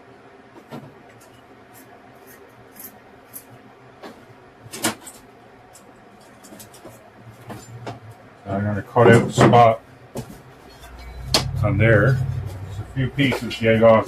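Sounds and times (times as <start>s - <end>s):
faint steady hum: 9.7s - 14.0s.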